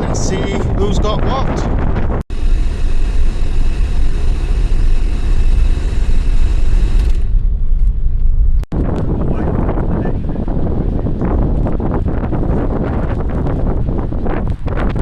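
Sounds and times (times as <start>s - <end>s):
vehicle low rumble: 0.0s - 15.0s.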